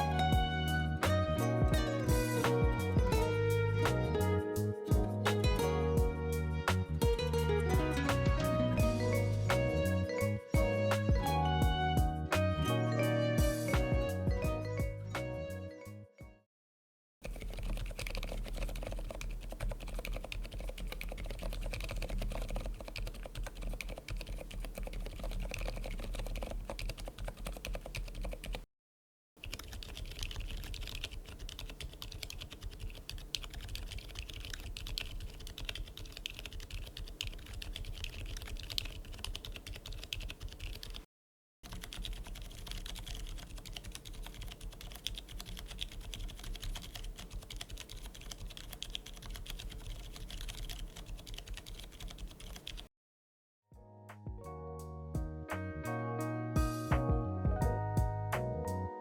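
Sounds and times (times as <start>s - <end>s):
mechanical keyboard typing: 17.2s - 28.6s, 29.4s - 41.1s, 41.7s - 52.9s.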